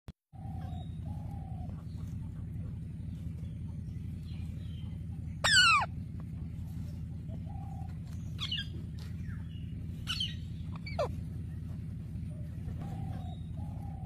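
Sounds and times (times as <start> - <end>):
low hum: 0.3 - 14.0
parrot squawk: 5.4 - 5.9, 10.1 - 11.1
parrot whistling: 5.4 - 5.9.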